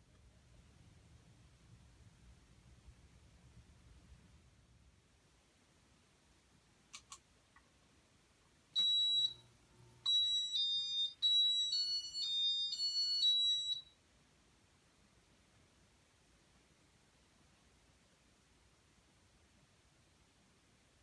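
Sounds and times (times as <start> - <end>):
quick clicks: 6.9 - 7.7.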